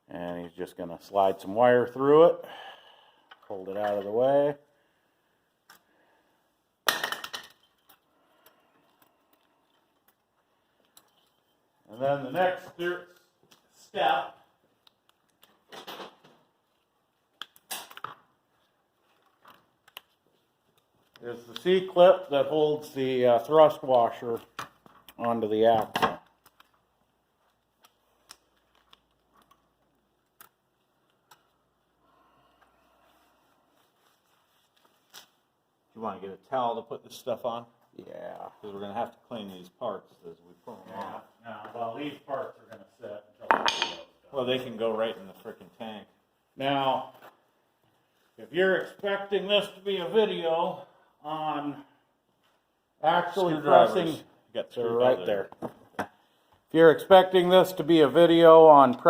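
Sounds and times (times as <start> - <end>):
soft rustling: 32.9 - 35.5.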